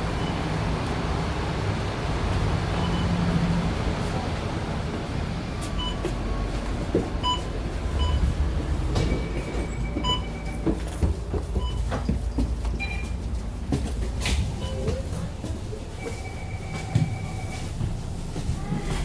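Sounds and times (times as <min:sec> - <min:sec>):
bus engine and road rumble: 0:00.0 - 0:19.0
short electronic beeps: 0:16.0 - 0:17.6.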